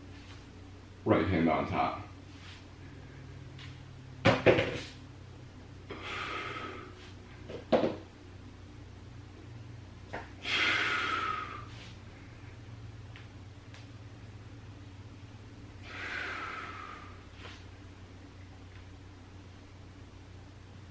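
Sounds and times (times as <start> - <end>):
man breathing out hard: 5.9 - 7.2, 10.4 - 11.9, 15.8 - 17.2.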